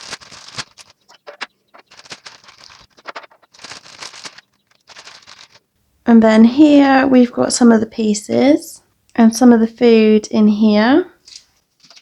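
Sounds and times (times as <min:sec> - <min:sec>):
small plastic pieces clicking: 0:00.0 - 0:05.7
plastic packaging crinkling: 0:00.0 - 0:05.8, 0:11.2 - 0:12.0.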